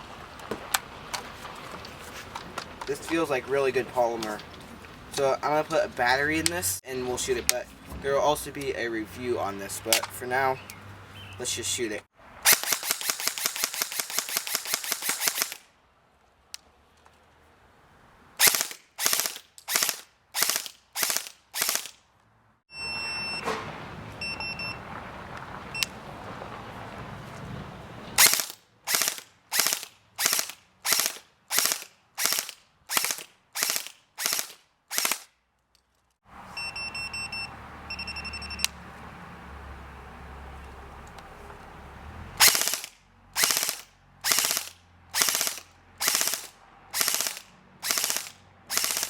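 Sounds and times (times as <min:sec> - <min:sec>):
airsoft gun full-auto burst: 0:12.5 - 0:15.6, 0:18.4 - 0:22.0, 0:28.2 - 0:35.3, 0:42.4 - 0:49.0
airsoft gun single shots: 0:18.4 - 0:22.0.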